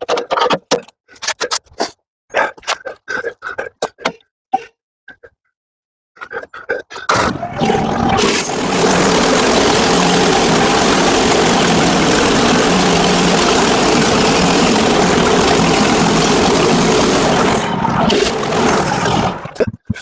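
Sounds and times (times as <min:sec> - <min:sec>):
sawmill gas engine running: 0:07.1 - 0:19.6.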